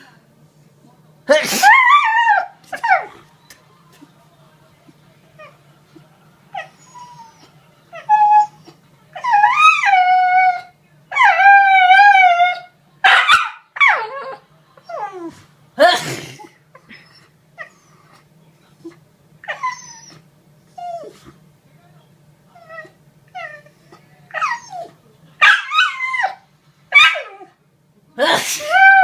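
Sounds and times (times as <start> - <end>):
dog howling and whining: 1.6 - 3.2, 6.6 - 15.4, 19.4 - 21.2, 22.5 - 27.6, 28.6 - 29.0
dog yipping: 24.4 - 27.5.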